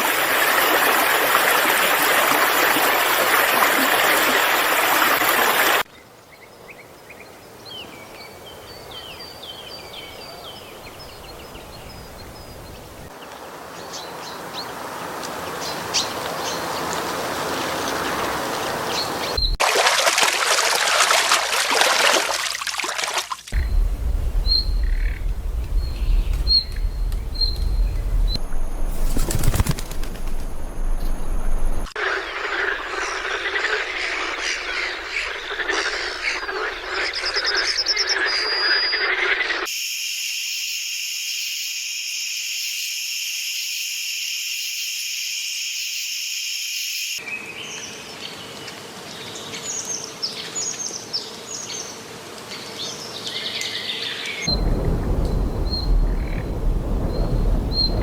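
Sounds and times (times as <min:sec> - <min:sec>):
birds chirping: 0:17.7 - 0:19.6, 0:23.5 - 0:36.6, 0:54.4 - 0:58.0.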